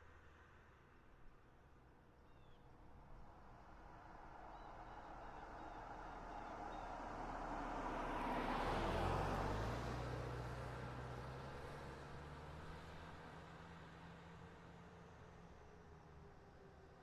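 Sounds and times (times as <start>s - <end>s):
car passing by: 5.8s - 13.2s.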